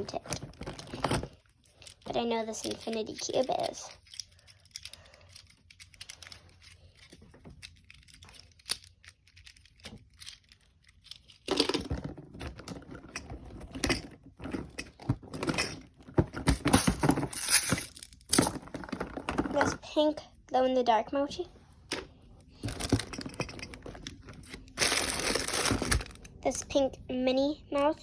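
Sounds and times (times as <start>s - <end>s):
plastic toys clicking and rattling: 0.0s - 20.1s, 21.9s - 26.8s.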